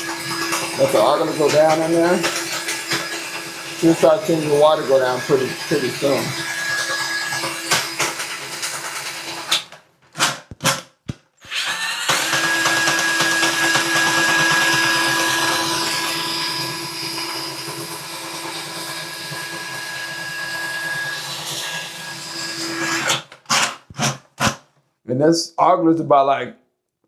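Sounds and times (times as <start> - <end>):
drain auger motor whining: 0.0 - 9.8, 11.4 - 23.2.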